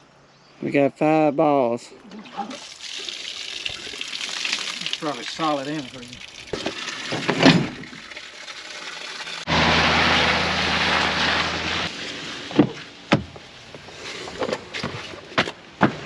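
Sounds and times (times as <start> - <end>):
engine running: 9.4 - 13.1.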